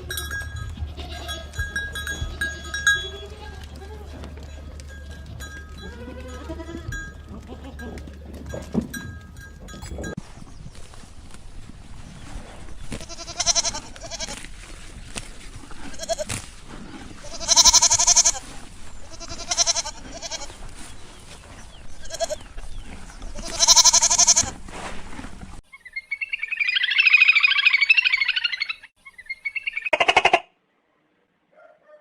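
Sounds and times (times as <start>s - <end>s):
goat bleating: 0.0s - 9.8s, 13.0s - 14.4s, 15.8s - 16.4s, 17.2s - 20.6s, 22.0s - 22.5s, 23.3s - 24.6s.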